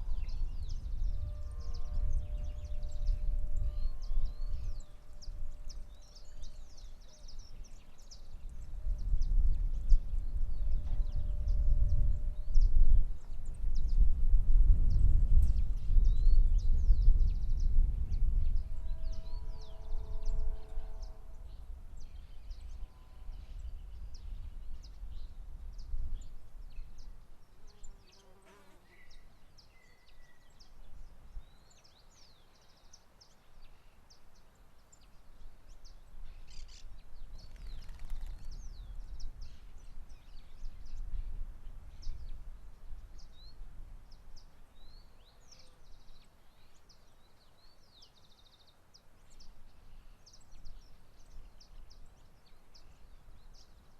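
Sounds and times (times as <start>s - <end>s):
wind buffeting microphone: 0.0s - 27.2s, 35.8s - 45.0s
small birds chirping: 22.0s - 41.1s.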